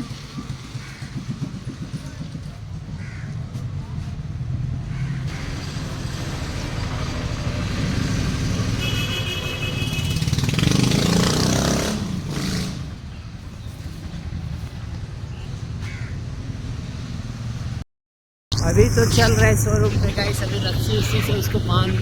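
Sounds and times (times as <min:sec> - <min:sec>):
motorcycle engine and road rumble: 0:00.0 - 0:17.8
vehicle passing loudly: 0:03.8 - 0:13.0
vehicle horn: 0:08.6 - 0:10.8.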